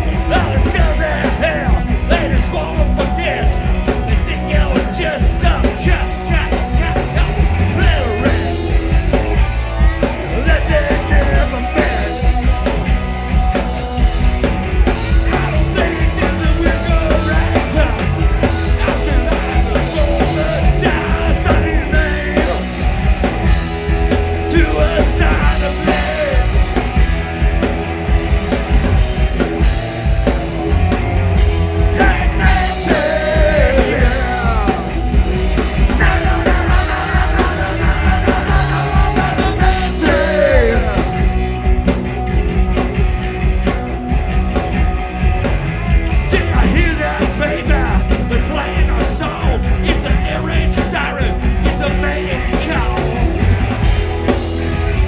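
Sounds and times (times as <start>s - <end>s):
rock band playing live: 0.0s - 55.0s
person singing: 36.0s - 41.4s.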